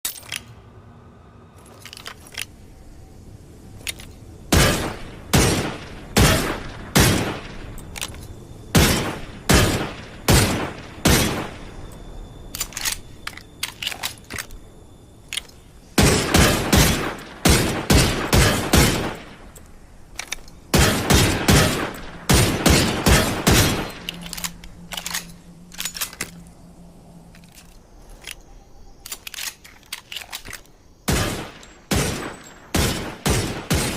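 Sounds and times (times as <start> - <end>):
faint gun clicks: 23.9 - 26.5, 27.3 - 30.8.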